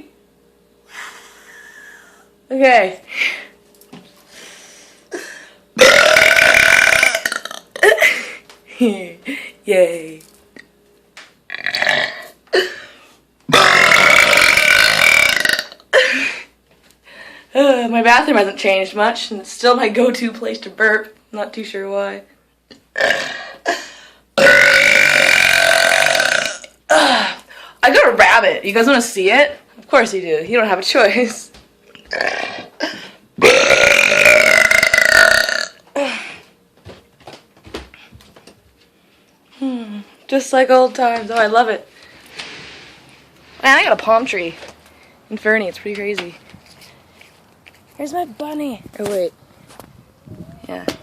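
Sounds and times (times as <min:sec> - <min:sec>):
woman burping loudly: 0:05.1 - 0:08.3, 0:11.5 - 0:16.4, 0:22.9 - 0:27.4, 0:31.9 - 0:36.2
woman belching: 0:05.8 - 0:08.0, 0:11.5 - 0:12.9, 0:13.5 - 0:16.0, 0:22.9 - 0:23.8, 0:24.4 - 0:27.3, 0:32.0 - 0:36.1.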